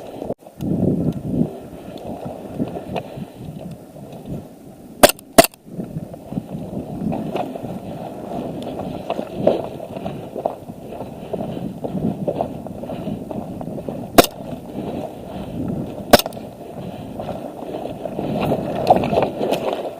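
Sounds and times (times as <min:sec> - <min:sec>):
airsoft gun shots: 0:05.0 - 0:05.6, 0:14.2 - 0:14.4, 0:16.1 - 0:16.4
rustling from movement: 0:06.0 - 0:19.9.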